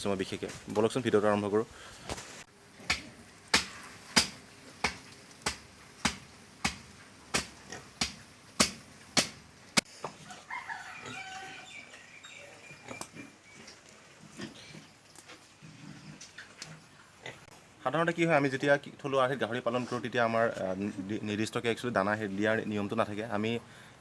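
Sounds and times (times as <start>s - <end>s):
sharp knocks: 2.9s - 9.9s
chicken calling: 10.2s - 13.2s.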